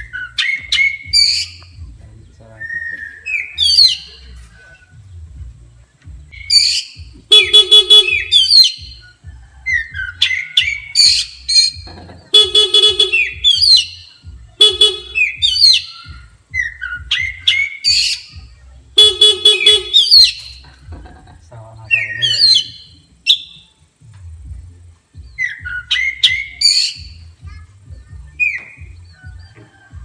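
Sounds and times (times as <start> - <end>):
bird singing chirps and whistles: 0.0 - 5.2, 6.0 - 20.7, 21.7 - 23.8, 25.1 - 30.0
buzzy horn toots: 7.0 - 8.6, 12.3 - 13.9, 14.6 - 15.8, 19.0 - 20.6.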